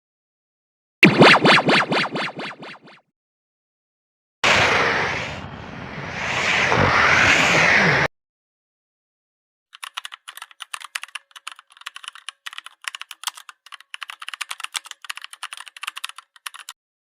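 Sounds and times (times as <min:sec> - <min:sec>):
rapid irregular clicking: 0:09.8 - 0:16.7.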